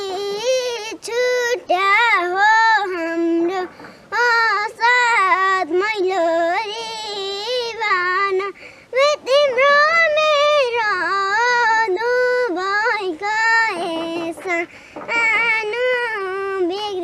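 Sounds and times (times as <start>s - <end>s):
girl singing unaccompanied: 0.0s - 17.0s
girl breathing: 8.5s - 9.0s, 14.7s - 15.0s.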